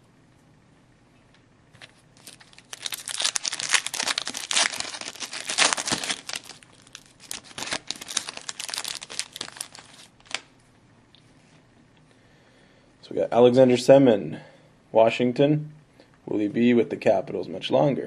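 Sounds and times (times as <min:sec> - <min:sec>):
foil wrapper tearing and crinkling: 0:01.8 - 0:10.4.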